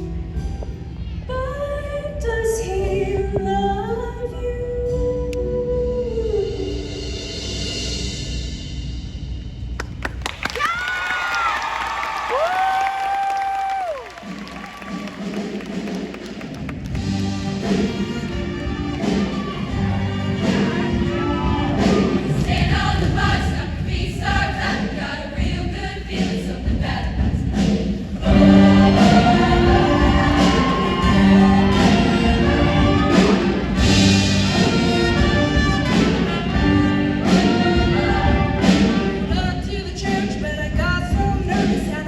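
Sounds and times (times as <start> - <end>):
choir singing with instrumental backing: 14.8 - 40.4.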